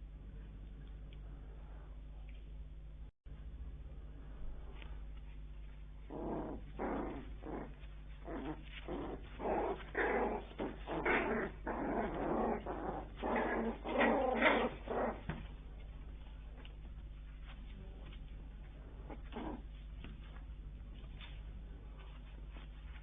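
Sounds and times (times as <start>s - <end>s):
puppies whining and grunting: 6.0s - 16.7s, 19.0s - 20.1s.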